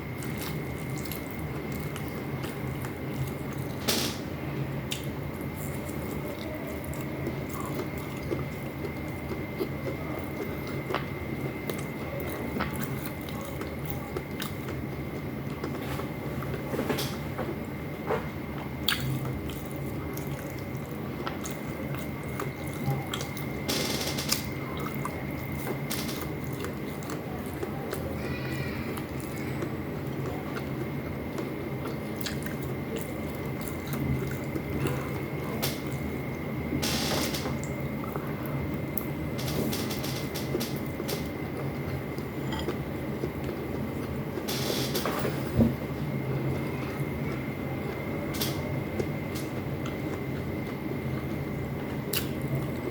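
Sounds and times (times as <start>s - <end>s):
steady low hum: 0.0s - 52.9s
chewing with wet mouth clicks: 0.1s - 3.8s, 4.9s - 15.8s, 18.6s - 23.7s, 24.3s - 28.2s, 28.9s - 36.4s, 40.5s - 44.5s, 46.7s - 52.9s.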